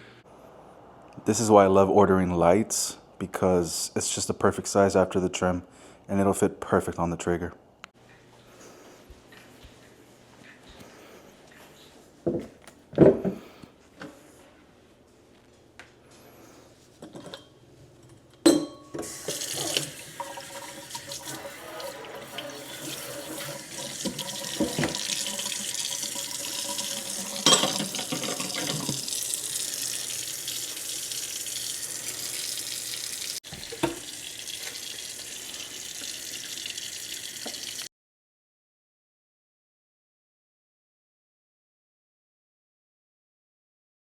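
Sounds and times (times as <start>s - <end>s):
tap running into a sink: 19.0s - 37.9s.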